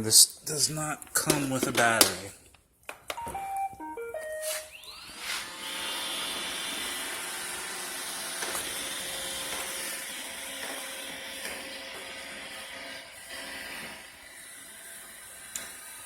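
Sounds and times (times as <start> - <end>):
robot vacuum start-up tune: 3.2 - 5.4
robot vacuum motors whirring: 4.5 - 16.0.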